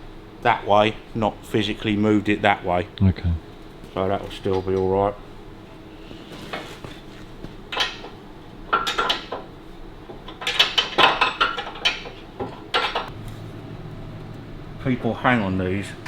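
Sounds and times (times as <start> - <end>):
spanner clinking on metal: 7.7 - 9.5, 10.2 - 13.1.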